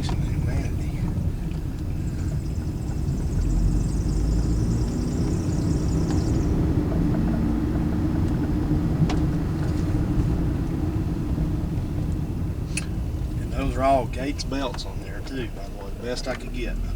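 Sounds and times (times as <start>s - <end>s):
car engine rumble: 0.0s - 16.9s
road noise: 0.0s - 16.9s
high chirping: 1.9s - 8.6s.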